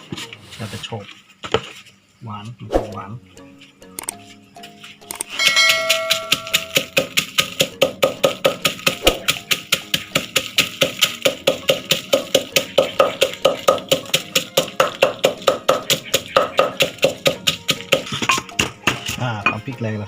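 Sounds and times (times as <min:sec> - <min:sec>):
pestle pounding in a mortar: 0:05.4 - 0:19.2.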